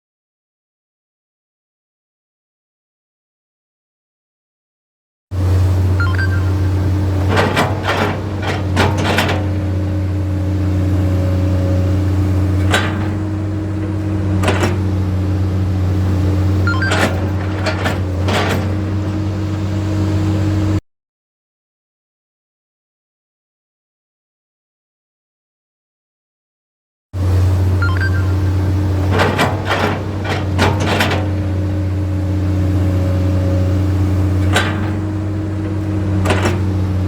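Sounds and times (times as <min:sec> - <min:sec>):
diesel engine idling: 0:05.4 - 0:20.8, 0:27.2 - 0:37.0
sharp machine knocks: 0:06.2 - 0:09.9, 0:12.2 - 0:15.7, 0:16.4 - 0:19.2, 0:28.0 - 0:31.7, 0:34.4 - 0:37.0.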